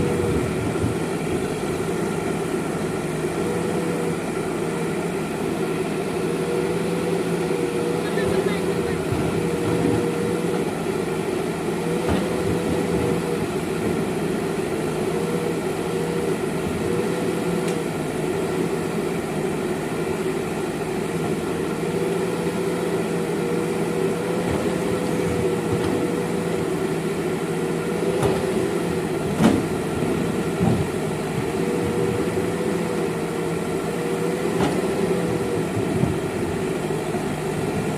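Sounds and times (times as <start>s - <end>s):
backhoe engine running: 0.0s - 37.9s.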